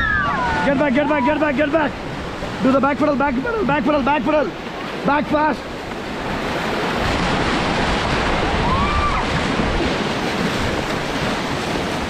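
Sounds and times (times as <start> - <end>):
whitewater rushing and splashing: 0.0 - 12.0
wind buffeting microphone: 5.7 - 12.0.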